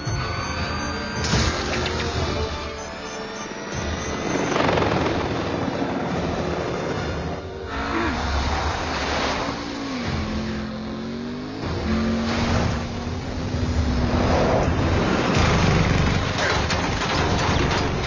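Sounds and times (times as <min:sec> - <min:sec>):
car engines revving: 0:00.0 - 0:18.0
heavy rumble: 0:04.6 - 0:18.0.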